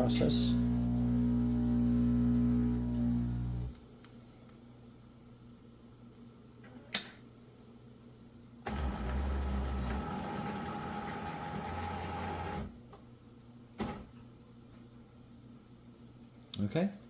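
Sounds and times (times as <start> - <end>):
espresso machine pump humming: 0.0 - 3.8.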